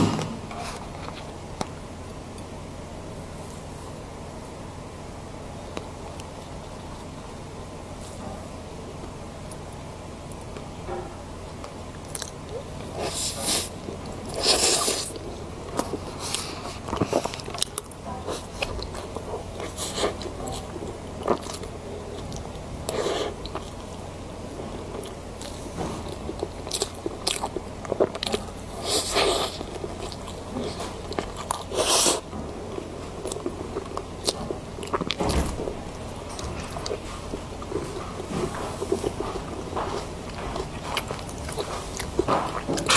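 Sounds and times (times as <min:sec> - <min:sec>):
steady low hum: 0:00.0 - 0:42.9
person chewing crunchy food: 0:11.6 - 0:42.9.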